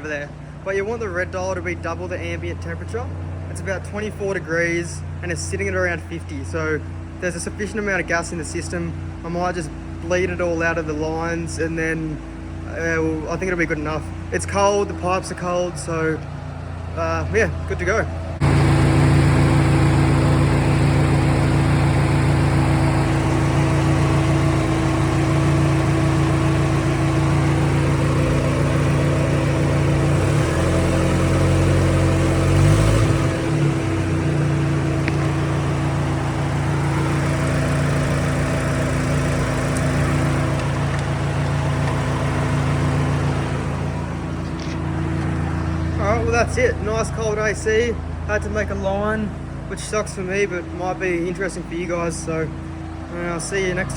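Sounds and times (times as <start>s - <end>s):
car engine idling: 0.0s - 53.9s.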